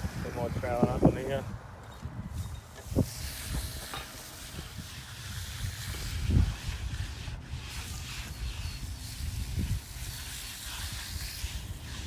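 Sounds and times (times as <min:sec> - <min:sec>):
trowel scraping concrete: 0:02.4 - 0:12.0.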